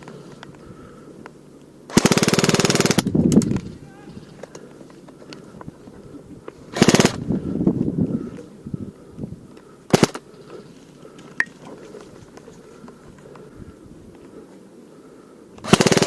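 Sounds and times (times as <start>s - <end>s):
airsoft gun full-auto burst: 1.9s - 3.2s, 6.7s - 7.3s, 9.9s - 10.2s, 15.6s - 16.0s.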